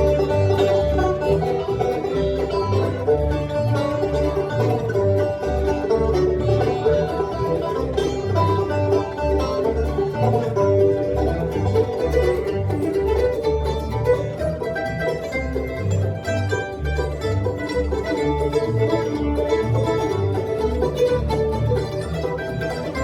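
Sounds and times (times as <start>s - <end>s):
banjo: 0.0s - 23.0s
bass line: 0.0s - 23.0s
fiddle: 0.0s - 23.0s
guitar: 0.0s - 23.0s
mandolin: 0.0s - 23.0s.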